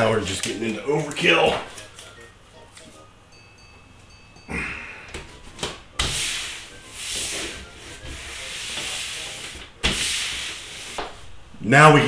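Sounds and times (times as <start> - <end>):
rubbing strokes on workbench: 6.0 - 11.3.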